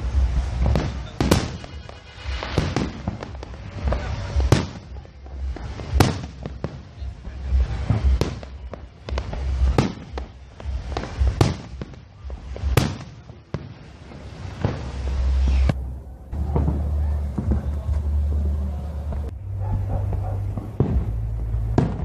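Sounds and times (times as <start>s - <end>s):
small fireworks pops: 0.0s - 18.4s, 19.0s - 22.0s
fireworks bursting with bangs: 0.0s - 22.0s.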